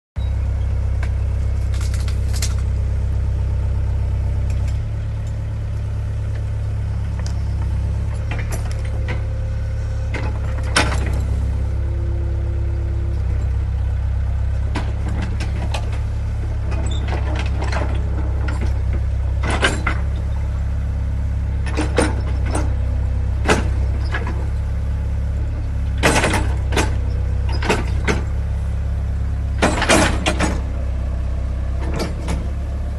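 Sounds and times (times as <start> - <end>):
excavator engine idling: 0.2 - 32.9
sharp metal knocks and clanks: 26.0 - 28.3, 29.6 - 30.7.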